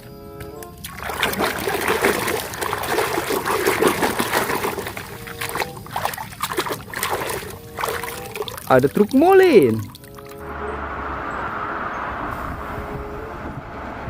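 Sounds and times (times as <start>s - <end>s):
water trickling and splashing: 0.4s - 10.6s.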